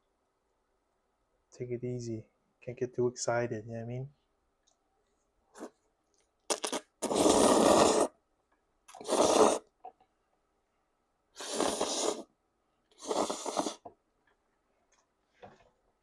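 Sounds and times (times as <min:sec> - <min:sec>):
person slurping noodles: 0:05.6 - 0:05.8, 0:06.5 - 0:08.2, 0:08.9 - 0:09.7, 0:11.4 - 0:12.3, 0:13.0 - 0:13.8.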